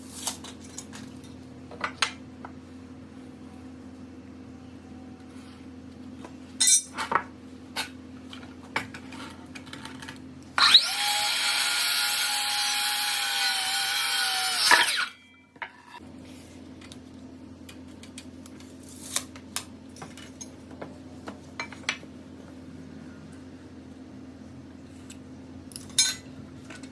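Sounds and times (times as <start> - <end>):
handheld power tool running: 10.6 - 15.2.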